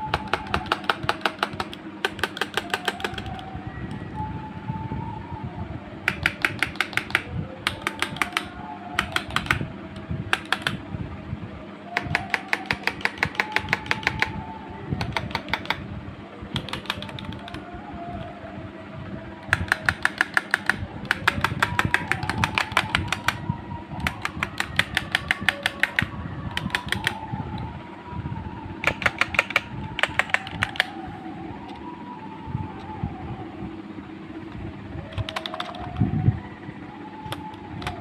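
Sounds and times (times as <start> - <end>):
keyboard typing clicks: 0.0 - 4.0, 6.1 - 9.6, 10.3 - 10.8, 12.0 - 14.4, 15.0 - 15.8, 16.6 - 17.6, 19.5 - 23.4, 24.0 - 27.2, 28.8 - 30.9, 35.1 - 36.0.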